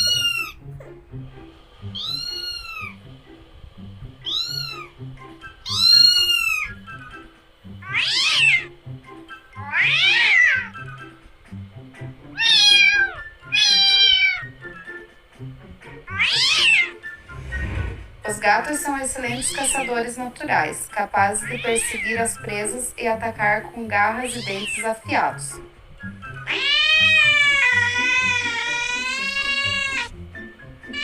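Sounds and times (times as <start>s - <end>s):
cat meowing: 0.0s - 0.6s, 1.9s - 3.0s, 4.2s - 5.0s, 5.6s - 6.8s, 7.8s - 8.7s, 9.6s - 10.8s, 12.4s - 14.5s, 16.1s - 17.0s, 19.3s - 20.0s, 21.4s - 22.2s, 24.2s - 25.0s, 26.4s - 30.1s.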